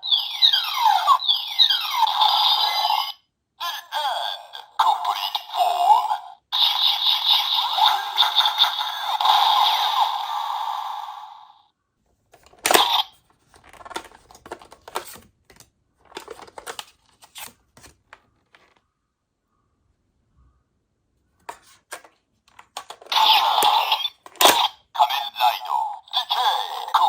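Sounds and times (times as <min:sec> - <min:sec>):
toy electronic sound effect: 0:00.0 - 0:11.5, 0:12.6 - 0:13.2, 0:22.8 - 0:27.0
plastic clicks: 0:12.3 - 0:18.8, 0:21.4 - 0:24.8
plastic rattling and scraping: 0:12.3 - 0:18.8, 0:21.4 - 0:24.8.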